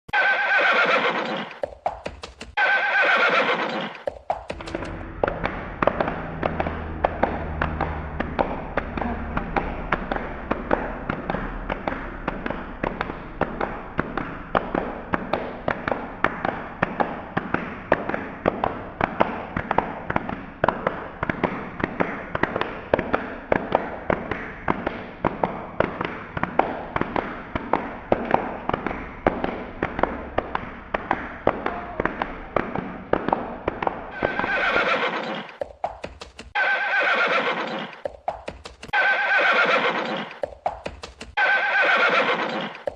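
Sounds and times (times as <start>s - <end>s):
horse neighing: 0.1s - 1.6s, 2.6s - 5.0s, 34.1s - 35.6s, 36.6s - 38.1s, 38.9s - 40.5s, 41.4s - 42.9s
horse hooves galloping: 0.1s - 42.9s.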